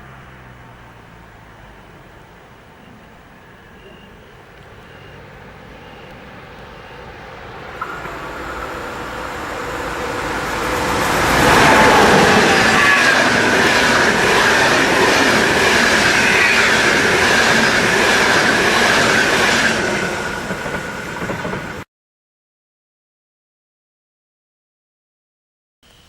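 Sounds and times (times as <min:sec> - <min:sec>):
train passing: 0:00.0 - 0:21.8
wheels squealing on rails: 0:01.5 - 0:21.8
clattering train wheels: 0:05.8 - 0:21.8.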